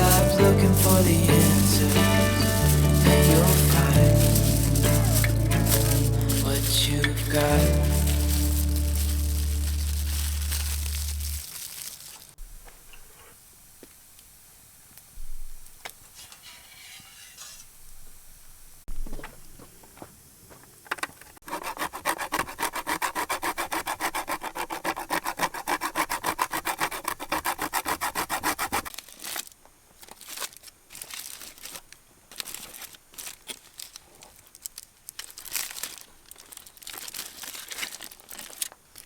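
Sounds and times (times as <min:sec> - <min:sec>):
fast back-and-forth scraping: 0:00.0 - 0:11.4, 0:21.4 - 0:28.9
small clicks and rustles: 0:28.9 - 0:39.0.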